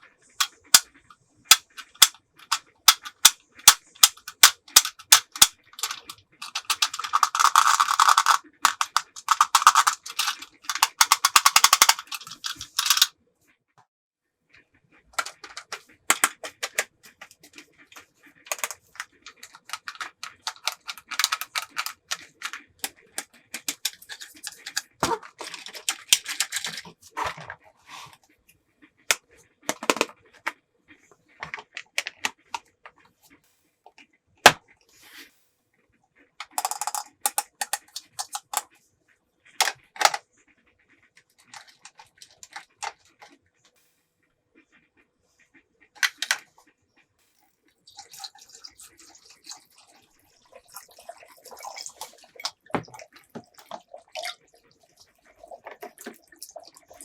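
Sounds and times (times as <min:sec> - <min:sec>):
plastic toy pieces clicking: 0:00.4 - 0:13.1, 0:15.2 - 0:27.0, 0:29.1 - 0:30.6, 0:36.4 - 0:38.8, 0:39.6 - 0:40.2, 0:41.2 - 0:43.3, 0:46.0 - 0:46.6.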